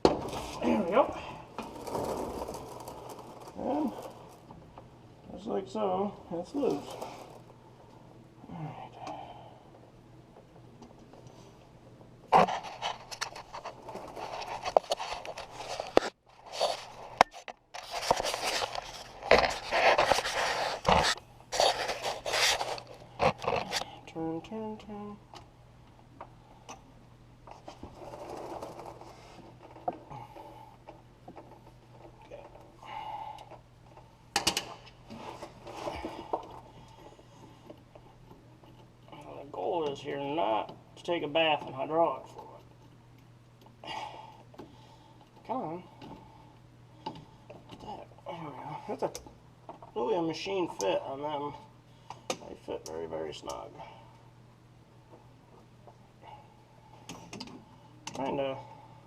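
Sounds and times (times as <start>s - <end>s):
scraping and rustling: 0.1s - 4.8s, 6.4s - 7.6s, 12.3s - 23.9s, 27.5s - 30.6s.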